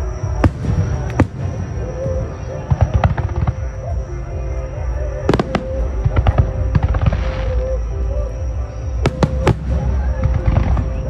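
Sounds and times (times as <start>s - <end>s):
low rumble: 0.0s - 11.0s
music: 0.0s - 11.0s
fireworks bangs: 0.3s - 3.9s, 5.2s - 7.6s, 9.0s - 11.0s.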